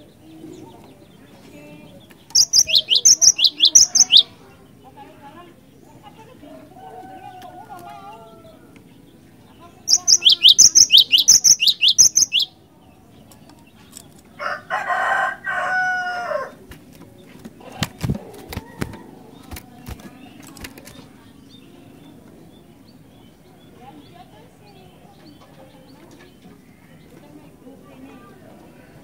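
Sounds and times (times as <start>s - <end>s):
bird singing repeated whistles: 2.4s - 4.2s, 9.9s - 12.5s
rooster crowing: 14.4s - 16.6s.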